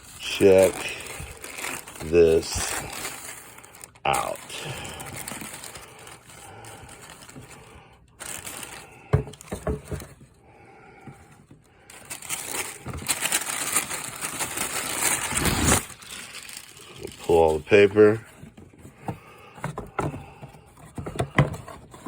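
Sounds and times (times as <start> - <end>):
tissue paper crinkling: 0.0 - 9.4, 11.9 - 18.3
shoebox being handled and opened: 0.0 - 10.4, 11.0 - 22.0.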